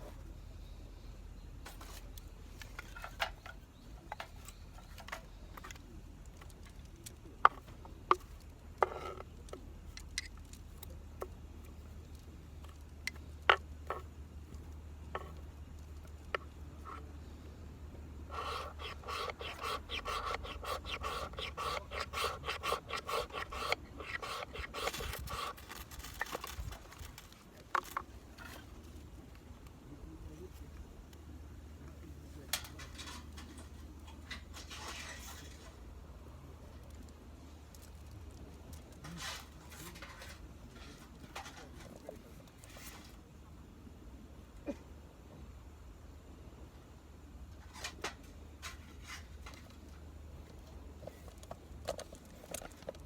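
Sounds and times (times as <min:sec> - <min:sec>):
rough rasp: 0:18.3 - 0:26.6
rapid scraping strokes: 0:18.3 - 0:27.2.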